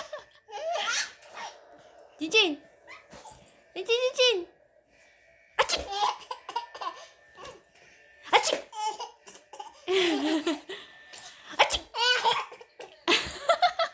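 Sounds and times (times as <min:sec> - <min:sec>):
sharp sneezes: 0:08.3 - 0:08.7, 0:11.6 - 0:11.9.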